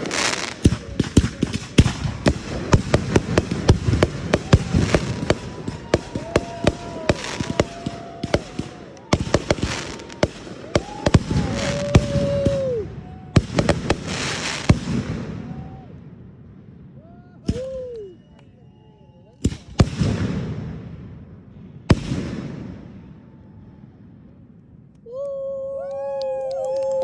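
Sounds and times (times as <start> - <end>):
fireworks crackling hiss: 0.0 - 12.8, 13.4 - 15.2
fireworks bangs and pops: 0.0 - 15.8, 19.4 - 23.4.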